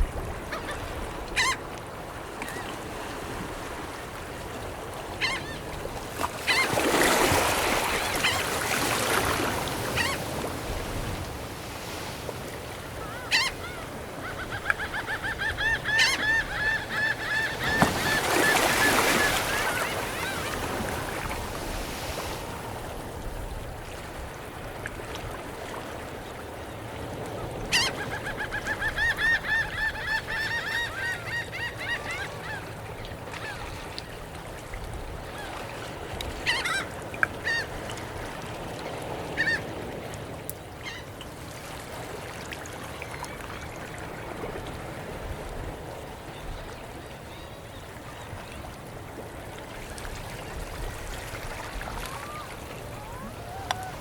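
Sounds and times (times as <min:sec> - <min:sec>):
gulls yelping: 0:13.0 - 0:21.2, 0:51.9 - 0:54.0.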